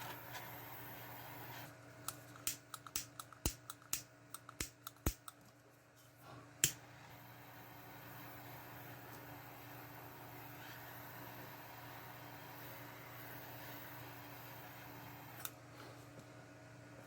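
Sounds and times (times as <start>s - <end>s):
room fan humming: 0.0s - 17.0s
sharp irregular clicks: 2.1s - 5.4s.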